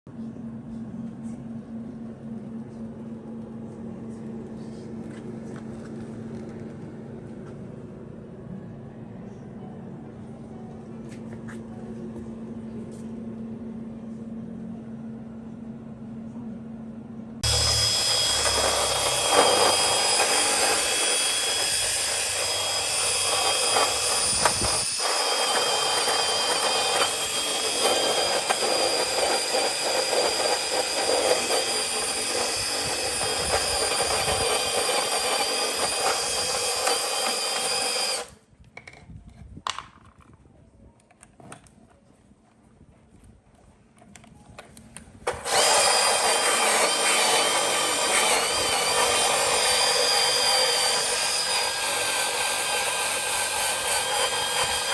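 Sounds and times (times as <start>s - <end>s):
steady low hum: 0.1s - 34.8s
power tool whirring: 17.4s - 38.4s, 45.3s - 54.9s.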